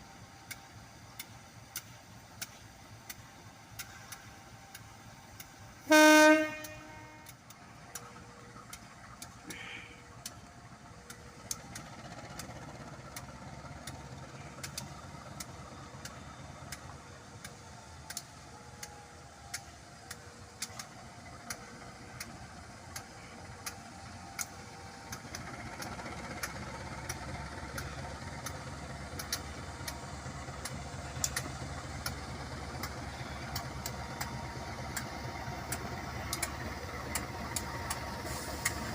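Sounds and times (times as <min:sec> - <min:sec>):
locomotive engine rumble: 0:00.0 - 0:38.9
train horn toot: 0:05.8 - 0:07.4
sharp clicks: 0:06.5 - 0:38.9.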